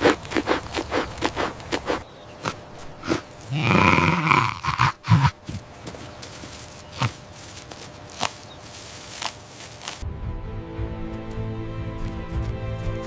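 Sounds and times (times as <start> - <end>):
animal low call: 0.0 - 5.5.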